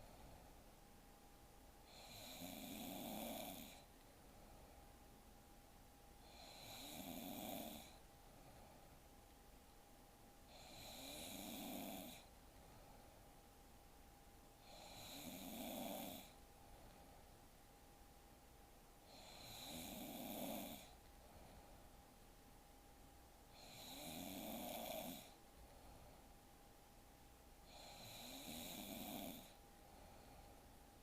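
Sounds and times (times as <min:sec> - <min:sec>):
woman snoring quietly: 0:01.8 - 0:03.9, 0:06.2 - 0:08.1, 0:10.5 - 0:12.3, 0:14.6 - 0:16.4, 0:19.0 - 0:21.0, 0:23.5 - 0:25.4, 0:27.6 - 0:30.3.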